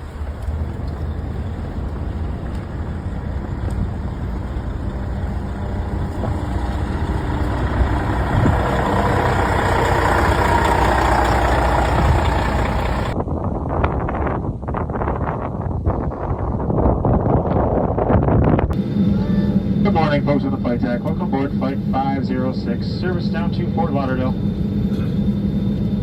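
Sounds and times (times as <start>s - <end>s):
heavy truck engines rumbling: 0.0s - 13.2s
rush of noise: 0.0s - 13.5s.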